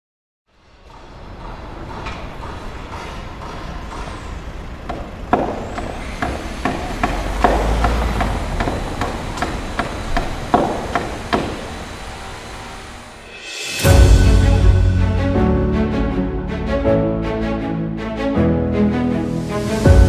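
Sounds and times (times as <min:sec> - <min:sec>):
machinery rumble: 0:00.6 - 0:20.0
hammer knocks: 0:00.9 - 0:12.0
low rumble: 0:13.3 - 0:20.0.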